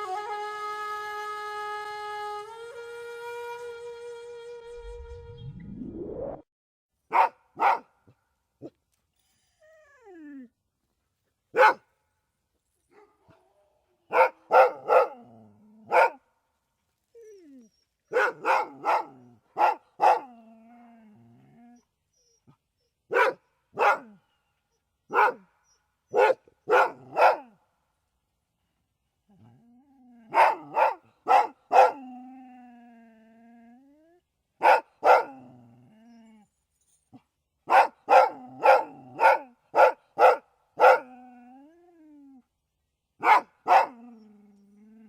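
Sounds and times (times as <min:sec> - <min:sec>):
short rising sweep: 0:04.7 - 0:06.5
dog barking: 0:07.1 - 0:08.2, 0:11.6 - 0:11.9, 0:12.9 - 0:15.3, 0:15.9 - 0:16.2, 0:18.1 - 0:20.3, 0:23.1 - 0:24.2, 0:25.1 - 0:25.5, 0:26.1 - 0:27.6, 0:30.3 - 0:32.0, 0:34.6 - 0:35.4, 0:37.7 - 0:41.1, 0:43.2 - 0:44.0
dog whining: 0:09.4 - 0:10.5, 0:17.2 - 0:18.2.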